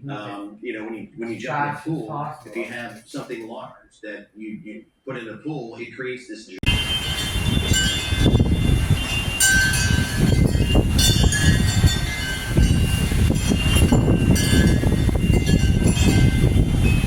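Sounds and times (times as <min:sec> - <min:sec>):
strong wind buffeting microphone: 0:06.6 - 0:17.0.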